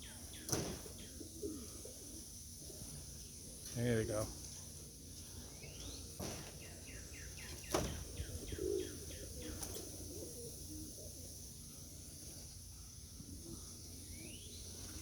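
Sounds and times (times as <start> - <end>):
songbird chirping: 4.5 - 12.0, 12.8 - 15.0.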